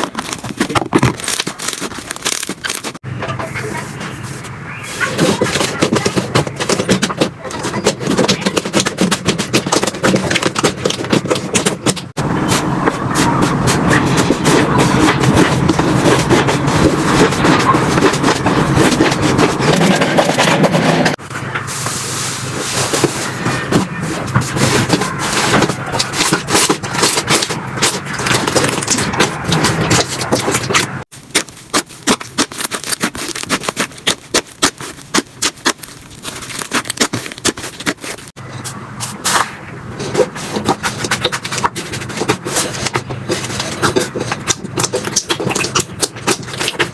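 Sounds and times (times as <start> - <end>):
slime crackling and popping: 0.0 - 3.0, 24.5 - 38.4, 40.6 - 46.9
slime squishing by hand: 0.0 - 46.9.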